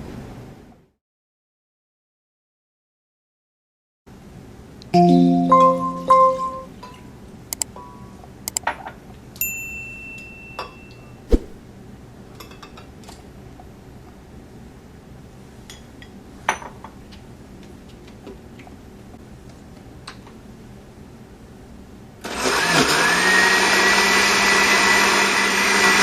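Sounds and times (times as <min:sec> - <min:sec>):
heavy thump: 0:11.3 - 0:11.6.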